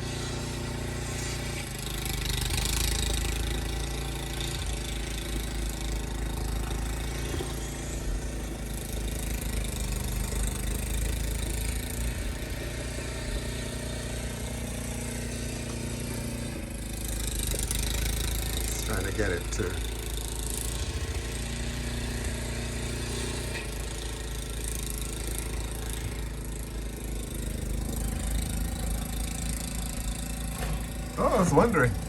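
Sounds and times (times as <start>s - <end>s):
car engine idling: 0.0s - 32.0s.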